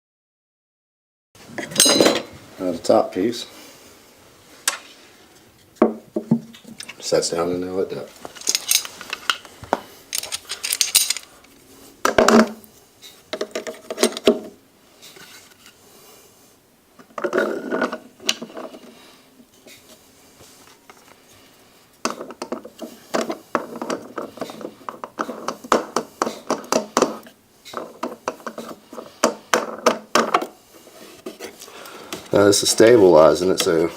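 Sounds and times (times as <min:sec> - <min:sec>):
metal parts clinking in a sink: 0:01.7 - 0:02.3, 0:08.4 - 0:09.4, 0:10.1 - 0:11.3.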